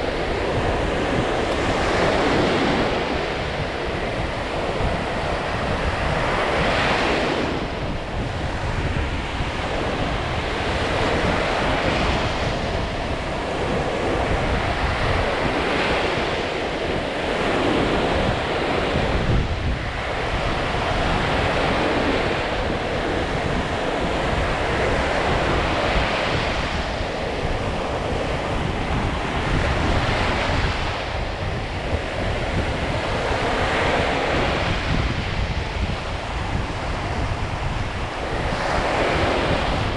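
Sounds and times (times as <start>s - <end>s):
waves breaking on shore: 0.0s - 39.9s
wind rumbling on microphone: 0.0s - 39.9s.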